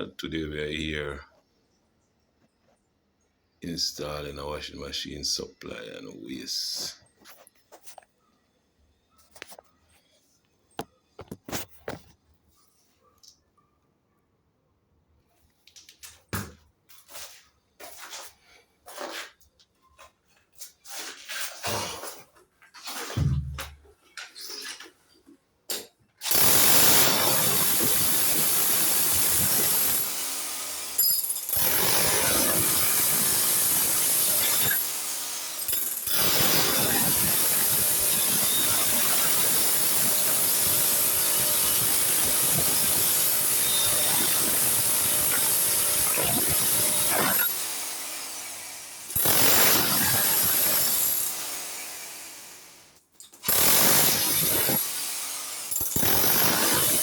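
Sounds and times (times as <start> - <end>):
power tool whining: 26.2 - 52.8, 53.4 - 57.0.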